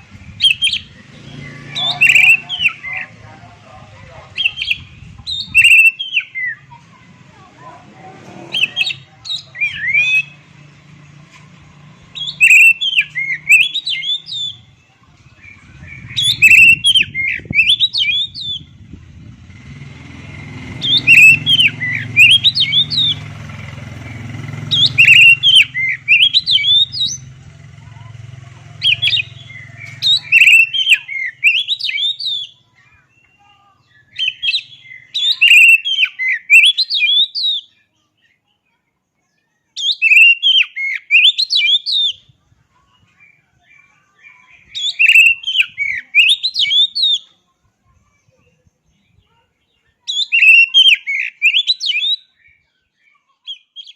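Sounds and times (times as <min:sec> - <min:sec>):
bird singing whistled phrases: 0:00.4 - 0:03.0, 0:04.4 - 0:06.6, 0:08.6 - 0:10.4, 0:12.1 - 0:14.7, 0:15.4 - 0:18.8, 0:20.8 - 0:23.3, 0:24.1 - 0:27.3, 0:28.8 - 0:37.8, 0:39.8 - 0:42.3, 0:43.2 - 0:47.3, 0:50.1 - 0:53.9
low rumble: 0:14.6 - 0:30.3.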